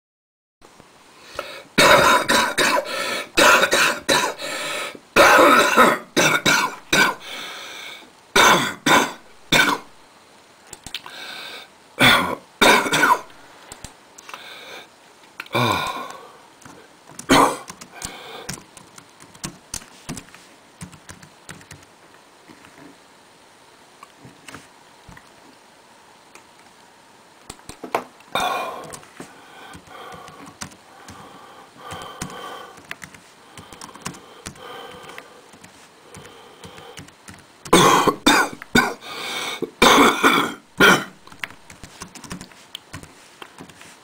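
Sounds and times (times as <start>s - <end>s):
person coughing: 1.8s - 4.4s, 5.2s - 7.2s, 8.4s - 9.9s, 12.0s - 13.3s, 17.3s - 17.7s, 37.7s - 41.2s
throat clearing: 37.7s - 39.0s, 39.6s - 41.2s.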